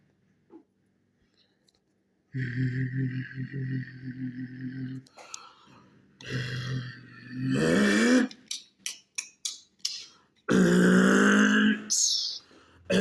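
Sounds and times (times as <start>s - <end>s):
person imitating truck engine: 7.4s - 13.0s
sharp mouth clicks: 8.2s - 10.2s.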